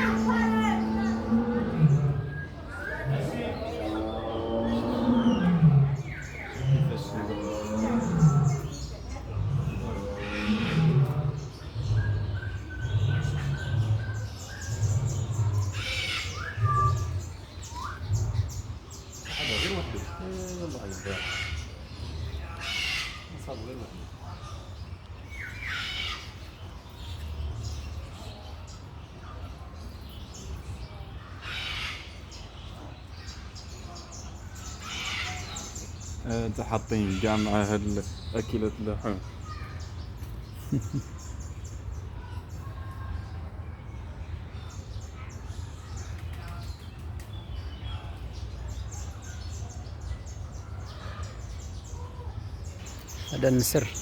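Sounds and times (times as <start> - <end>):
low outdoor rumble: 0.0 - 18.9
birds calling harshly: 0.0 - 54.0.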